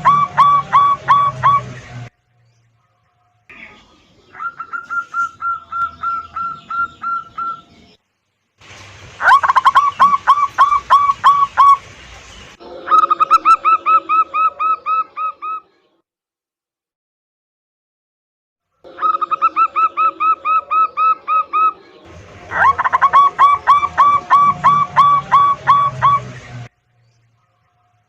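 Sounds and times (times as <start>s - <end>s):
dove cooing: 0.0s - 2.1s, 3.5s - 7.9s, 9.2s - 11.8s, 12.8s - 15.7s, 18.9s - 26.4s.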